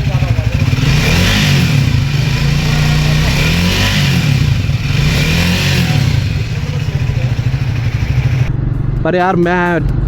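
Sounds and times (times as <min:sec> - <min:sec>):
motorcycle engine running: 0:00.0 - 0:08.5
steady rushing hiss: 0:05.7 - 0:08.5.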